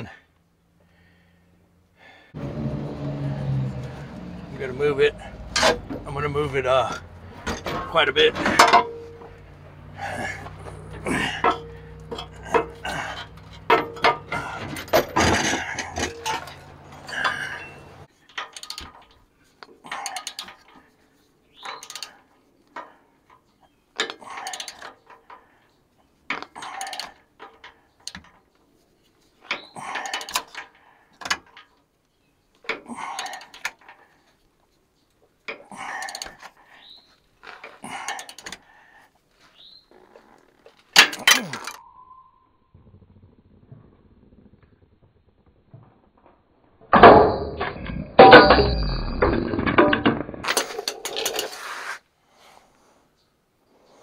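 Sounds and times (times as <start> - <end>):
metal clinks: 6.9 - 19.0.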